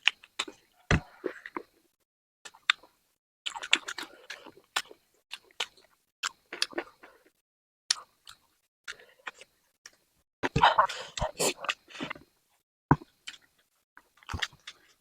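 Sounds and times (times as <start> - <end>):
person chewing with mouth clicks: 2.5 - 12.2, 12.9 - 15.0.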